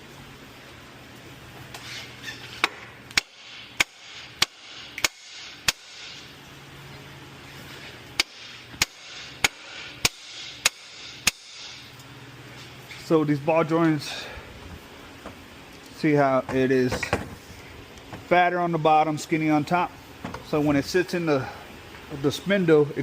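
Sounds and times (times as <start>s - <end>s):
hammer striking metal: 2.6s - 6.3s, 8.2s - 11.9s.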